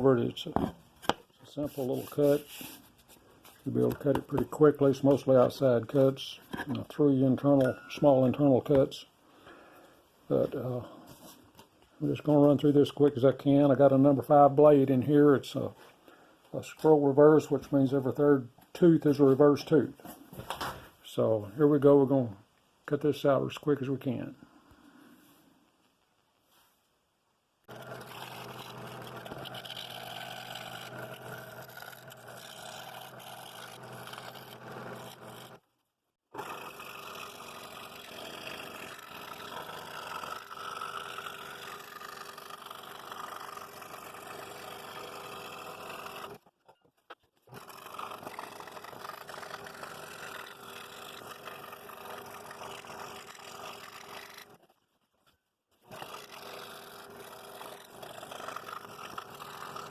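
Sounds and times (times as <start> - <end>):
scroll saw cutting wood: 27.7 - 35.6, 36.3 - 46.5, 47.3 - 54.8, 55.8 - 59.9.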